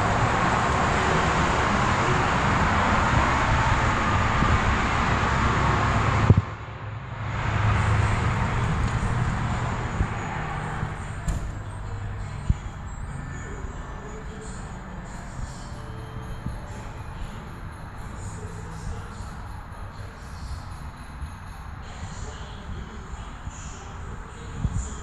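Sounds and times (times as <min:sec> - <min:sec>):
vehicle running noise: 0:00.0 - 0:25.0.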